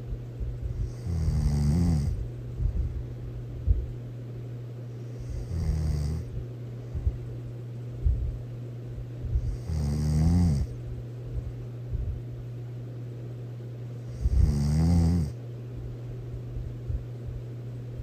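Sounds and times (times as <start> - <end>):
steady low hum: 0.0 - 18.0
person snoring loudly: 0.8 - 2.2, 5.2 - 6.3, 9.4 - 10.7, 14.1 - 15.4.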